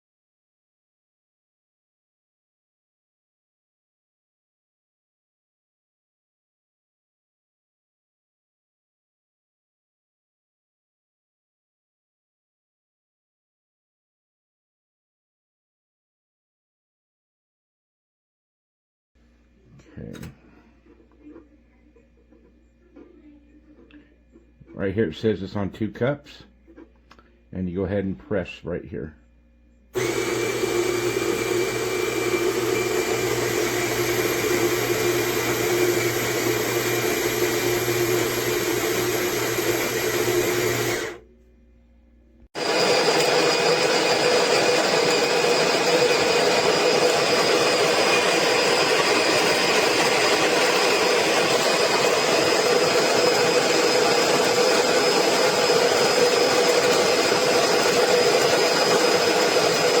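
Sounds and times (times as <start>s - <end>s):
electric coffee grinder whirring: 30.0s - 41.2s, 42.6s - 60.0s.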